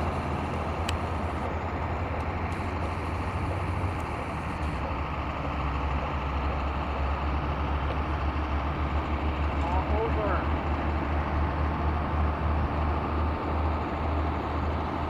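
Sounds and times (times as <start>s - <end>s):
model plane motor humming: 0.0s - 1.6s.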